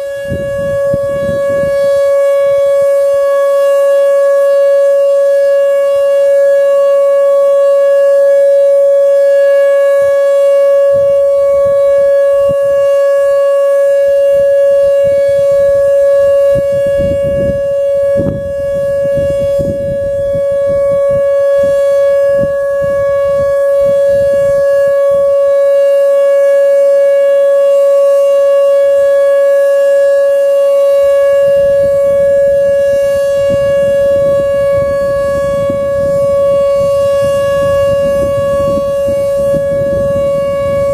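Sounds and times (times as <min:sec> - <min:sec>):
warning siren steady high tone: 0:00.0 - 0:40.9
low rumbling noise: 0:31.4 - 0:40.9.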